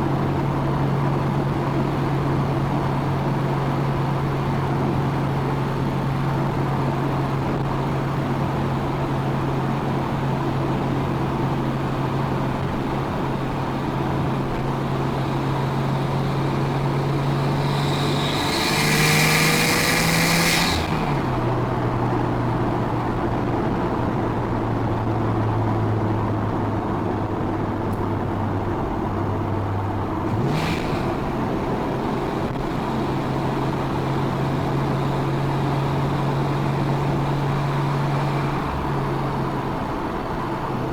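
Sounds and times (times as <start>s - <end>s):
car engine revving: 13.9s - 22.8s, 30.0s - 40.4s
turbo hiss: 16.7s - 20.8s.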